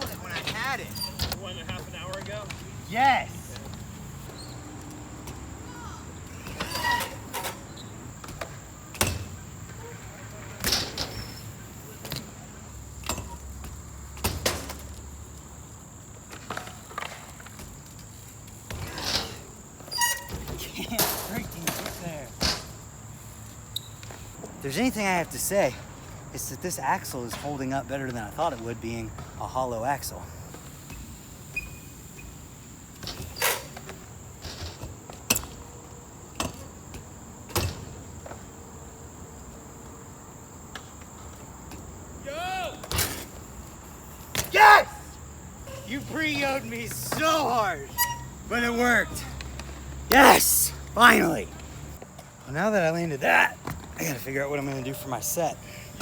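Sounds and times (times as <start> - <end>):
bike knocking on skatepark ramp: 0.0 - 15.0, 16.2 - 22.9, 33.0 - 38.6, 42.7 - 43.5
crickets chirring: 0.0 - 56.0.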